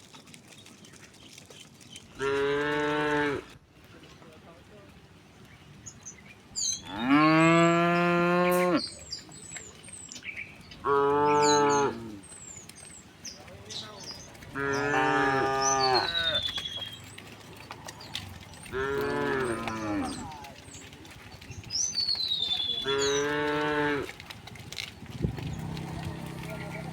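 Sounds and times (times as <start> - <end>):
cattle mooing: 2.2 - 3.5, 6.8 - 9.0, 10.8 - 12.4, 14.4 - 21.2, 22.4 - 24.3, 25.3 - 26.9.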